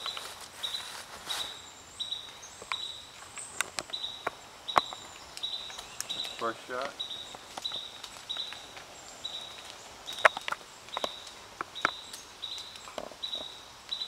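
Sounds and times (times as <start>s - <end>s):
faint sharp clicks: 2.6s - 13.1s.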